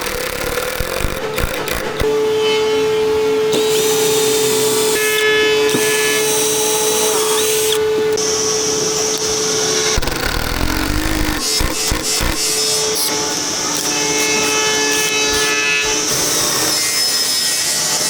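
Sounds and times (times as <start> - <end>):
rough grinding: 0.0 - 2.1, 9.9 - 16.9
power tool motor whining: 0.0 - 2.8, 3.4 - 18.0.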